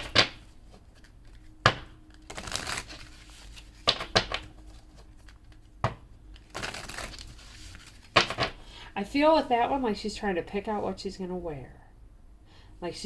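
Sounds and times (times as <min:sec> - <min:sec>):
cards snapping and tapping: 0:00.0 - 0:00.4, 0:03.8 - 0:04.5, 0:08.1 - 0:08.6
cards rustling: 0:00.0 - 0:08.6.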